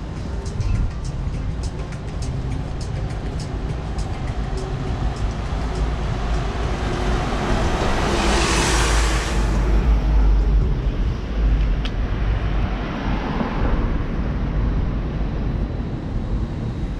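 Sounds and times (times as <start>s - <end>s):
street traffic rumble: 0.0s - 16.9s
vehicle passing close: 3.2s - 10.7s.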